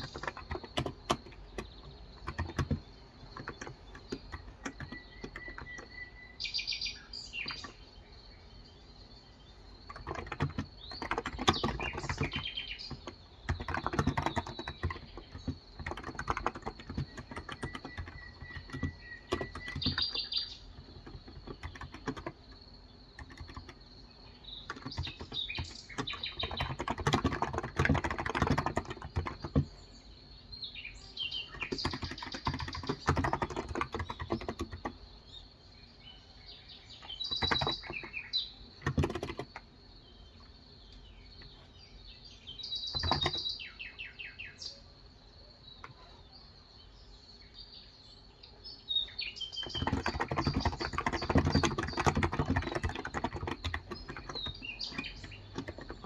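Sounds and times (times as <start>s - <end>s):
fast keyboard typing: 0.0s - 6.4s, 7.3s - 8.0s, 9.4s - 29.9s, 31.3s - 35.1s, 37.0s - 40.6s, 42.6s - 43.6s, 49.4s - 56.0s
birds chirping: 0.0s - 56.0s.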